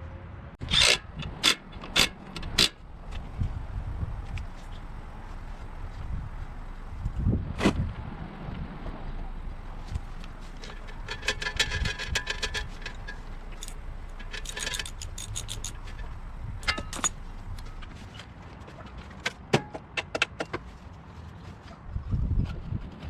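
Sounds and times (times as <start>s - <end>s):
metal tools clinking and rattling: 10.0s - 18.2s.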